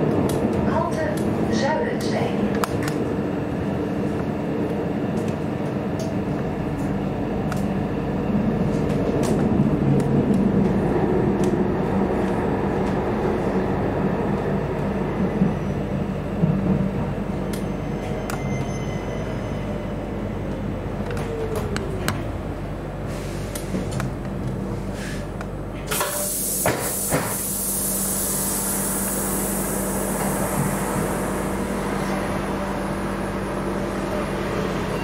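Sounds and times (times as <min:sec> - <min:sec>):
mechanical rumble: 0:20.0 - 0:25.9.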